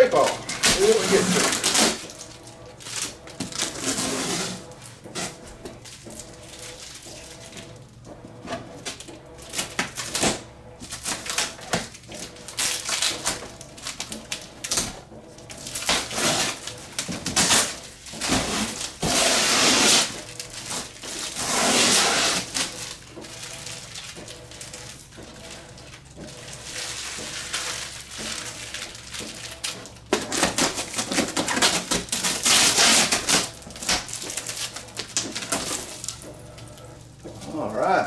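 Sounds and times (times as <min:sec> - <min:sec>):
packing tape ripping: 0:00.0 - 0:06.0, 0:08.8 - 0:15.0, 0:15.6 - 0:25.1, 0:26.6 - 0:36.3
cardboard crackling and knocking: 0:00.0 - 0:07.8, 0:15.6 - 0:36.4.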